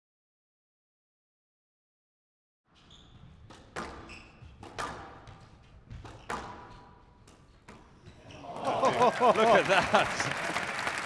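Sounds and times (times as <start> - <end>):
squash ball hitting rackets and walls: 3.1 - 8.4.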